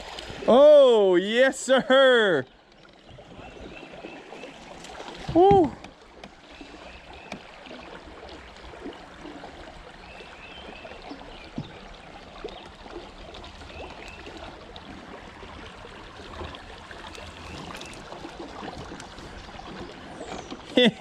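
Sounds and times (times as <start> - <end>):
river water trickling: 0.0 - 21.0.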